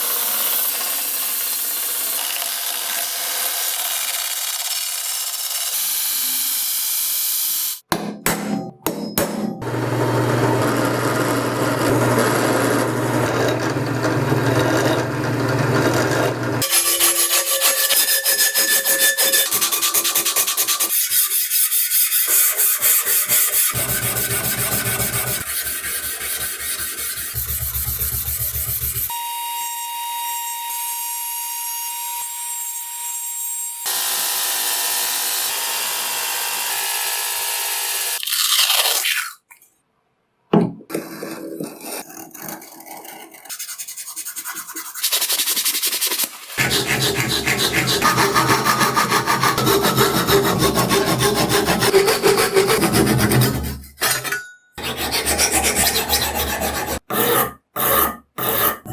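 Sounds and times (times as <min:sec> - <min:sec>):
filing and sanding metal: 0:16.1 - 0:29.2, 0:41.0 - 0:58.9.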